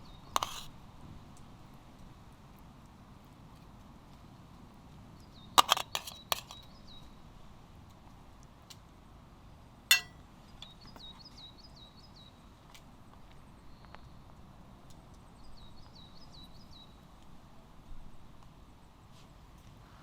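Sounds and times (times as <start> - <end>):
sharp clinks: 9.9 - 10.1.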